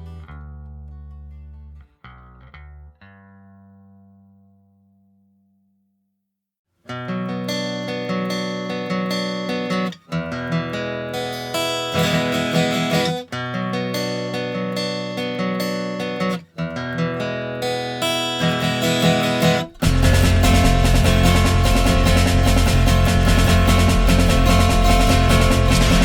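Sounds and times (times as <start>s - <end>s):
instrumental music sustained chords: 19.8s - 26.0s.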